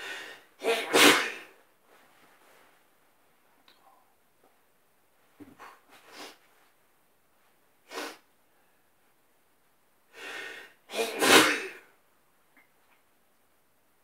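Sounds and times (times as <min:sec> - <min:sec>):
person sneezing: 0:00.6 - 0:01.6, 0:10.9 - 0:11.9.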